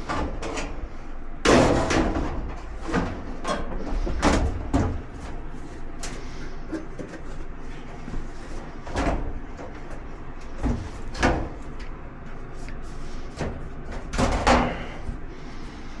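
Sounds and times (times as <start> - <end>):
scraping clunks of dryer parts: 0.0 - 15.6.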